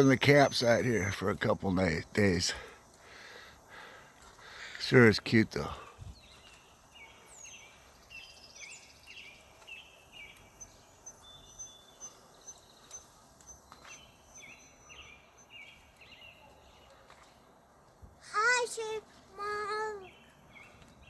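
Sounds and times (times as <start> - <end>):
birds chirping: 0.0 - 21.0
high bird peeps: 9.7 - 16.2.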